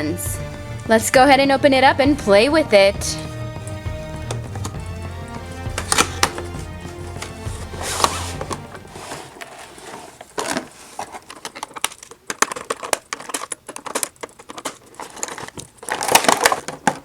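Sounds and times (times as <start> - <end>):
plastic and cardboard crinkling: 3.2 - 17.0.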